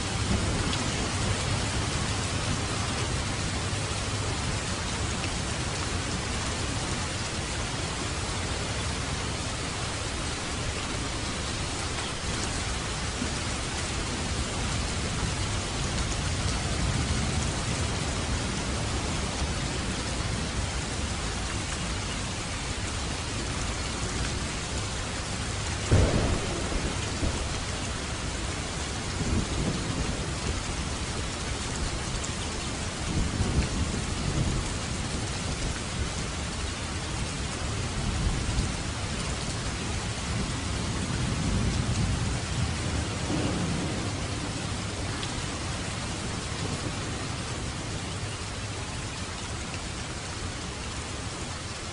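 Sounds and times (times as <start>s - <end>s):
steady rain: 0.0s - 51.9s
thunder clap and rumbles: 25.4s - 36.1s, 40.0s - 47.9s.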